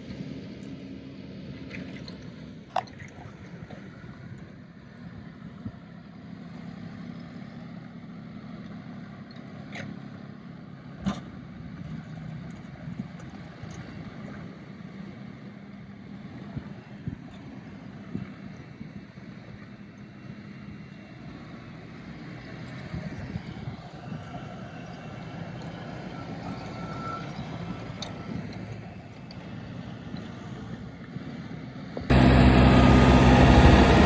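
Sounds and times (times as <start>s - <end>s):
vehicle engine humming: 24.2s - 34.0s.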